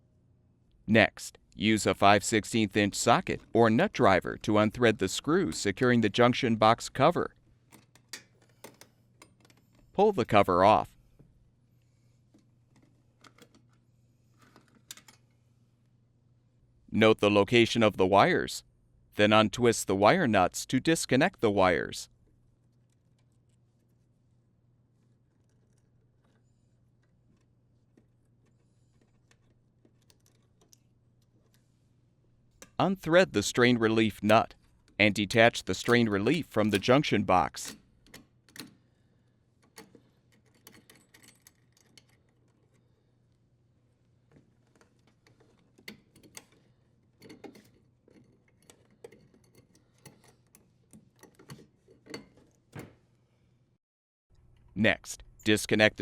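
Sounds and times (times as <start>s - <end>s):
small clicks of wires handled: 27.0s - 31.6s.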